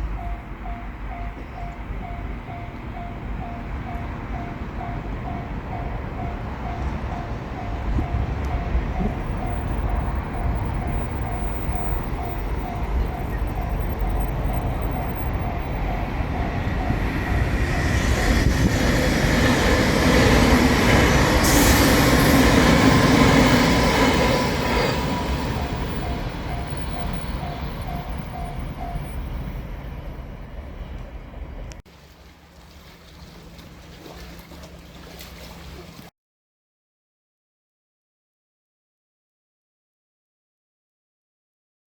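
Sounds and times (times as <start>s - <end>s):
level-crossing bell ringing: 0.0s - 18.4s, 22.2s - 29.6s
train rushing past: 0.0s - 31.7s.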